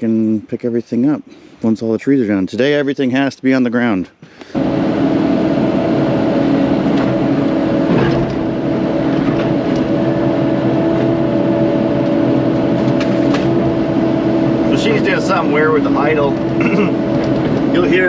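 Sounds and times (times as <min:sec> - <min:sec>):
excavator diesel engine running: 0:04.5 - 0:18.0.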